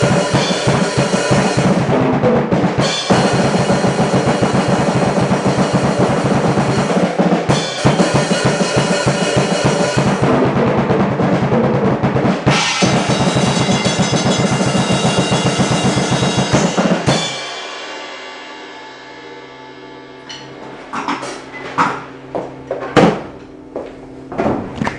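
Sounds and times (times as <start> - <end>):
acoustic drum kit played fast: 0.0 - 19.7.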